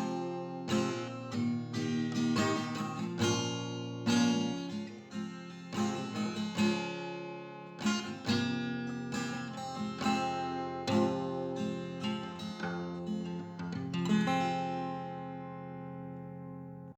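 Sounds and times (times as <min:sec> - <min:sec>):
acoustic guitar strumming chords: 0:00.0 - 0:16.9.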